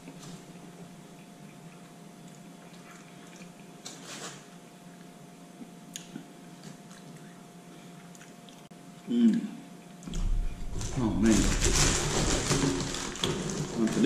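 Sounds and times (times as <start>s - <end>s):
person chewing wetly: 0.0s - 4.0s, 4.9s - 8.7s
steady low hum: 0.0s - 14.0s.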